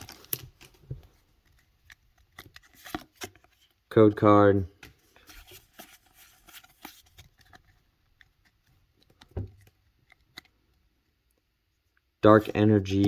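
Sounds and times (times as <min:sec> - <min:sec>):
cards rustling and clicking: 0:00.0 - 0:03.8, 0:04.8 - 0:10.8.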